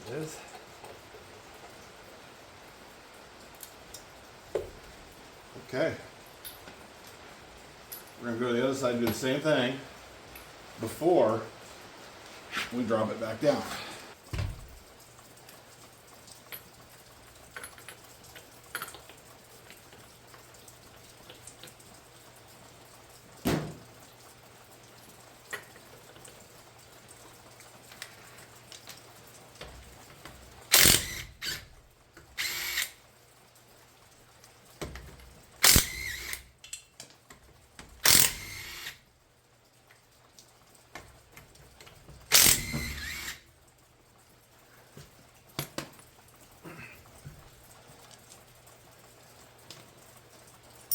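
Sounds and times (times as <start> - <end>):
power tool spinning lug nuts: 30.7 - 31.7, 32.3 - 33.0, 35.6 - 36.4, 38.0 - 39.0, 42.3 - 43.4.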